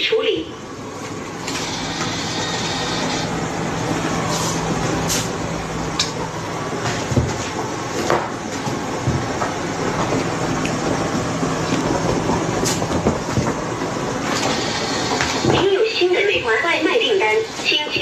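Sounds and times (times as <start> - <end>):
mechanical rumble and hiss: 0.0 - 18.0
knocks and clatter: 6.8 - 11.0.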